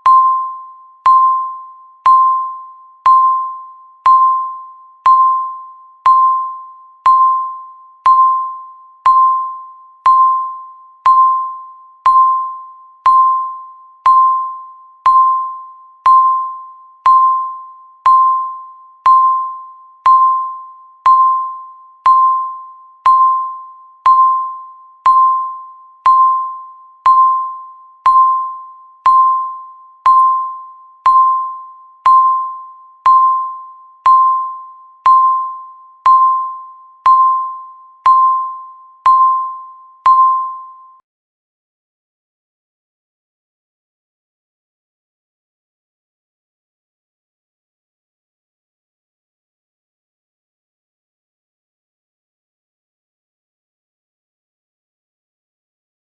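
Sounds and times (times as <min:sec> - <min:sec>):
countdown timer beeping: 0:00.0 - 0:41.0.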